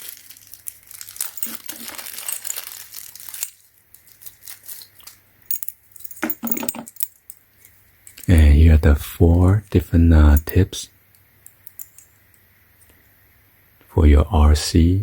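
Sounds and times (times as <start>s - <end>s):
rustling and crinkling: 0.0s - 8.6s
metal parts clicking: 1.3s - 2.7s, 5.5s - 7.4s.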